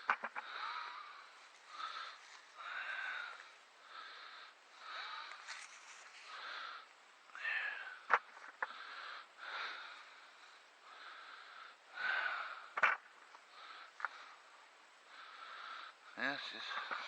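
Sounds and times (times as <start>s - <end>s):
man breathing heavily: 0.0s - 17.0s.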